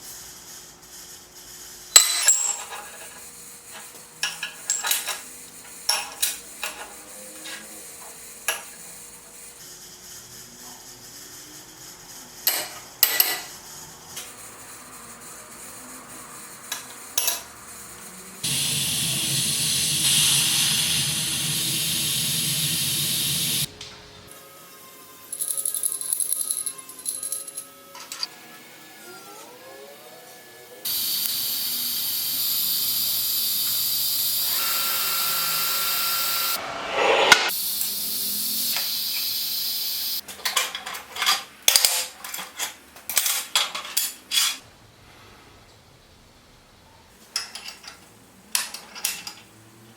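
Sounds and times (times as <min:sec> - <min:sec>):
tool hissing: 0:18.4 - 0:23.7, 0:30.9 - 0:40.2.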